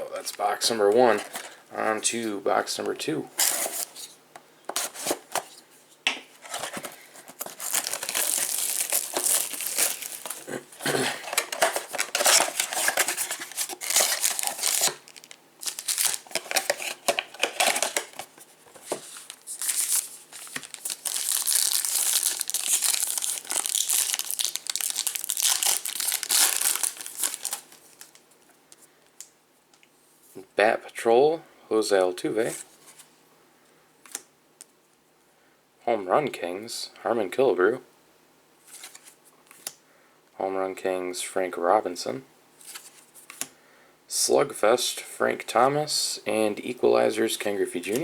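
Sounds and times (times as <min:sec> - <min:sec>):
plastic wrapping crinkling: 0:06.4 - 0:28.3.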